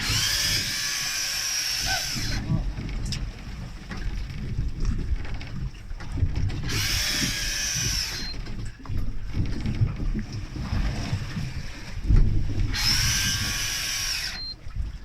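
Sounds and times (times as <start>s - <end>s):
electric fishing reel whine: 0.0s - 2.5s, 6.7s - 8.4s, 12.7s - 14.6s
boat rumble: 0.0s - 15.0s
wind: 0.0s - 15.0s.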